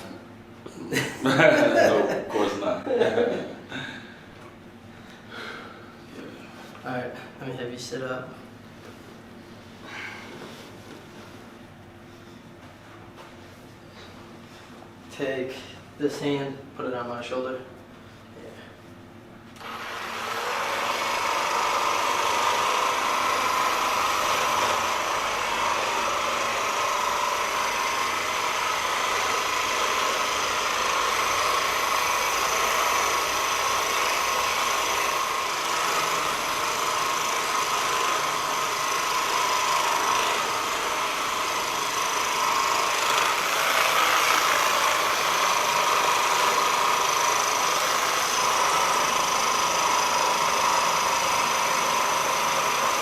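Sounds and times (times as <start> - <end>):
massage gun motor buzzing: 19.6 - 53.0.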